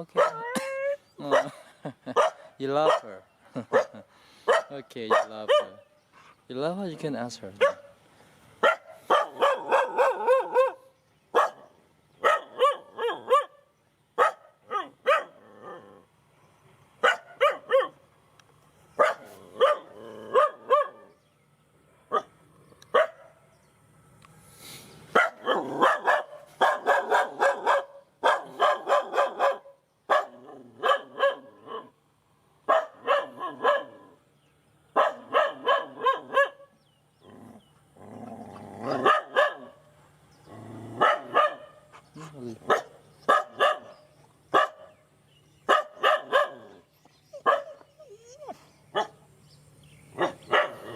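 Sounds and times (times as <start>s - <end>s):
dog barking: 0.1s - 0.6s, 1.3s - 5.8s, 7.6s - 8.0s, 8.6s - 15.4s, 17.0s - 18.0s, 19.0s - 21.1s, 22.9s - 23.4s, 25.1s - 32.0s, 32.7s - 34.1s, 34.9s - 36.8s, 38.9s - 39.9s, 41.0s - 42.0s, 42.7s - 45.0s, 45.6s - 49.2s, 50.2s - 50.9s.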